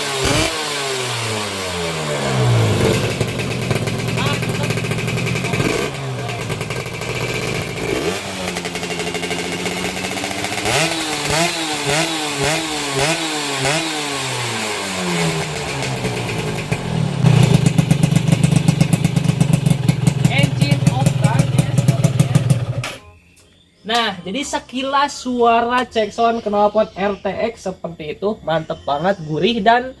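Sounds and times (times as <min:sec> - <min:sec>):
two-stroke engine revving: 0:00.0 - 0:23.0.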